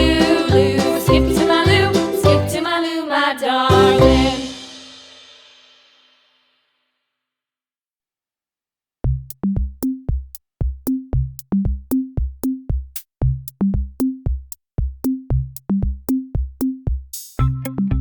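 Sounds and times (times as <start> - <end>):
drum machine bass drum beat: 0.0 - 2.6, 3.7 - 4.9, 9.0 - 18.0
held synth chords: 0.0 - 2.8, 3.7 - 4.7.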